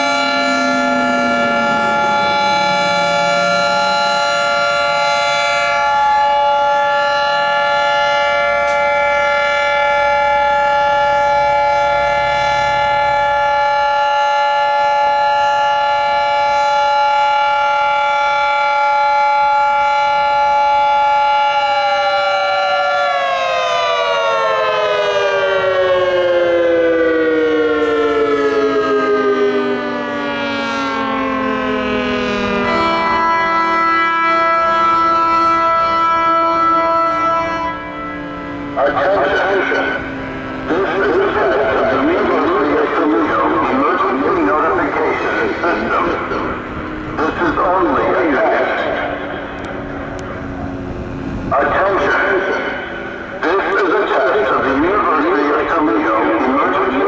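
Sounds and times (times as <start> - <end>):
two-tone warning siren: 0.0 - 57.0.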